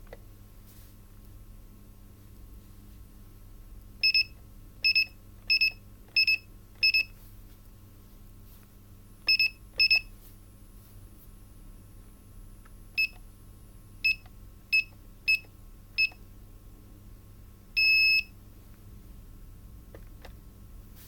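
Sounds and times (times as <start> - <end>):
faint steady hum: 0.0 - 21.0
short high-pitched beeps: 9.3 - 10.1.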